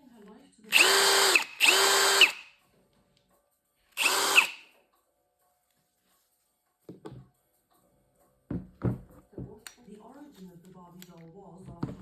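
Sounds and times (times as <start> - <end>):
cordless drill motor spinning: 0.7 - 2.5, 4.0 - 4.7.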